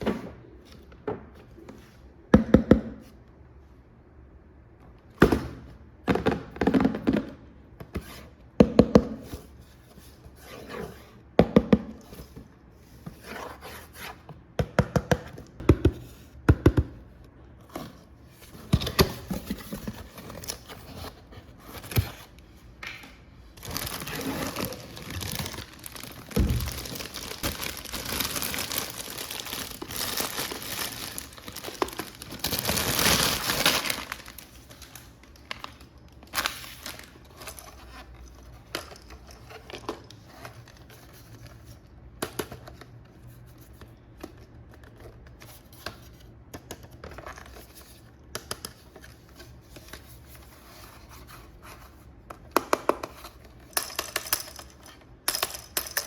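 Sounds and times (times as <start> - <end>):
plastic wrapping crinkling and tearing: 23.5 - 38.2
box and parts knocking: 23.7 - 33.0.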